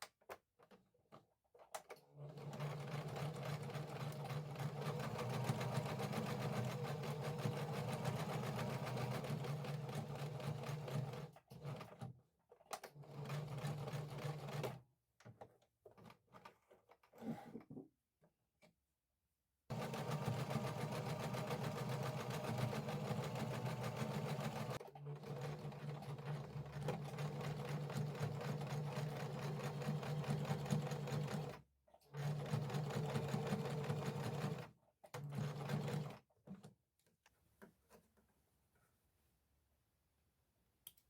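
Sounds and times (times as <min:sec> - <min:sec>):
sewing machine stitching: 0:01.6 - 0:12.1, 0:12.7 - 0:14.8, 0:19.7 - 0:36.7.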